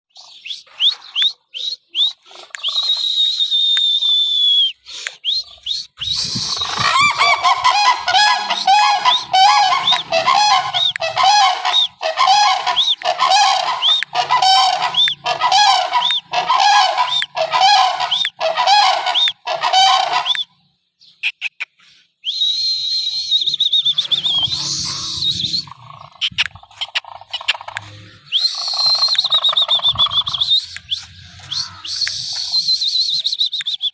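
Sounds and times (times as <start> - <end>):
high whistle-like tone: 0.5 - 6.8, 22.2 - 25.9, 28.2 - 33.9
cranes trumpeting: 6.5 - 20.3, 24.0 - 26.1, 26.7 - 32.6.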